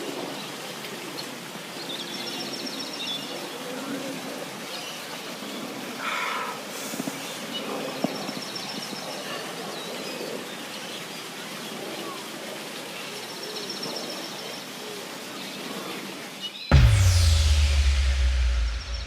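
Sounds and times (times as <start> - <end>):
loud music: 16.7 - 19.0.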